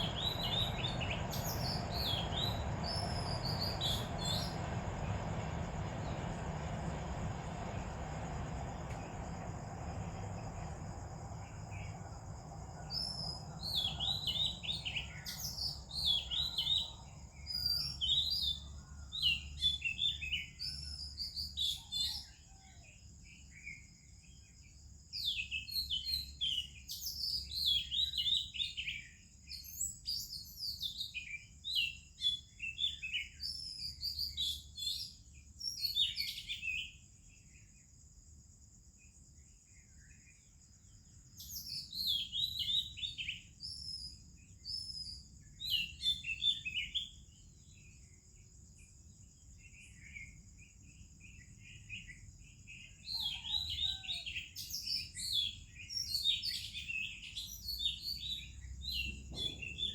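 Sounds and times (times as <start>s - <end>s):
bird singing whistles and warbles: 0.0s - 7.2s, 12.8s - 22.9s, 25.2s - 37.0s, 41.4s - 47.9s, 49.7s - 59.9s.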